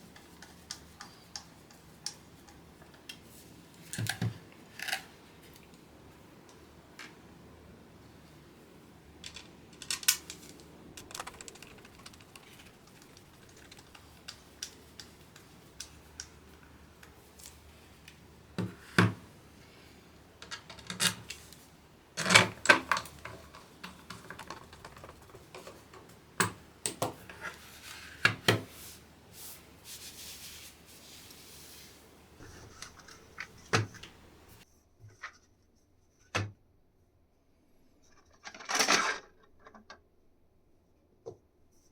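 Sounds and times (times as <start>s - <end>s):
keyboard parts clicking: 9.2s - 16.3s, 22.2s - 27.2s.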